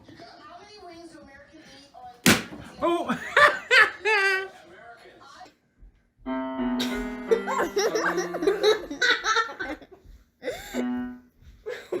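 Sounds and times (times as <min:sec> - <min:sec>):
people laughing: 0:02.8 - 0:04.6, 0:06.8 - 0:10.0
music with long held notes: 0:06.3 - 0:09.0.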